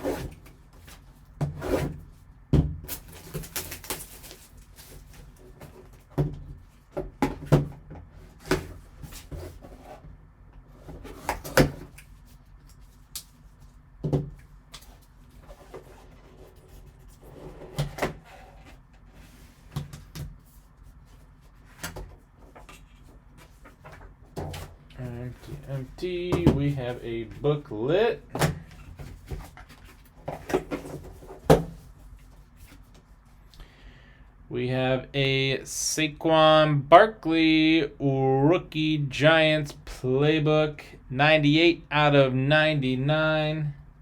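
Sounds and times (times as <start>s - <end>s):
cardboard and plastic packaging clicks: 2.9s - 4.7s
packaging rustling: 3.0s - 5.6s.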